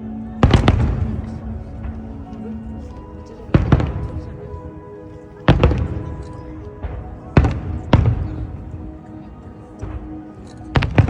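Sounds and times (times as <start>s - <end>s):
music playing: 0.0s - 11.0s
fireworks bursting with bangs: 0.4s - 11.0s.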